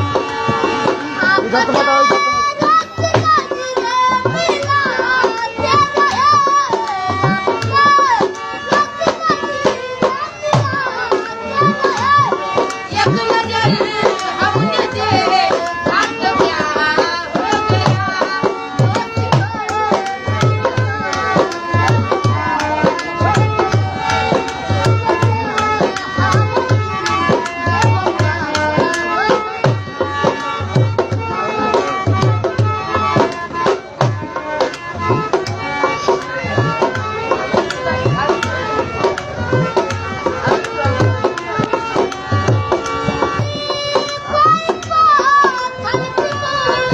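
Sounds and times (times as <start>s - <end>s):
hand drum beat: 0.0s - 46.9s.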